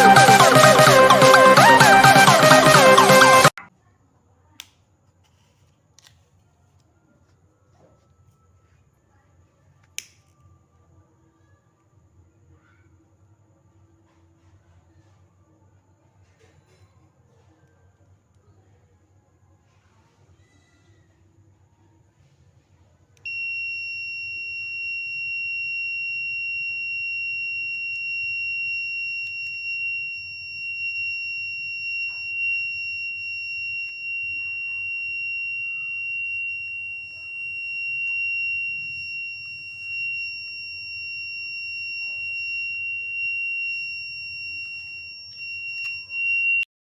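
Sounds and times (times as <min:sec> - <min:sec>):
high-pitched buzzer tone: 0:00.0 - 0:03.6, 0:23.3 - 0:46.7.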